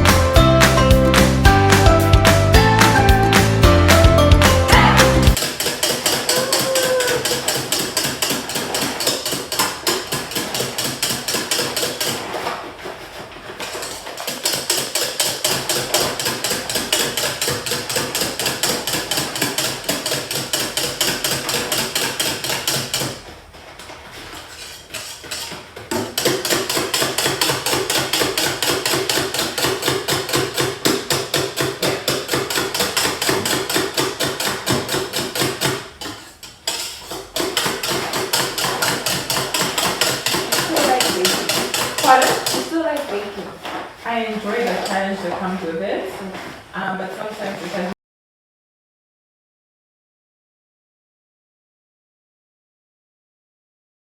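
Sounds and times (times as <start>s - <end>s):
whisk knocking against bowl: 5.3s - 12.5s, 13.1s - 23.2s, 24.5s - 45.6s.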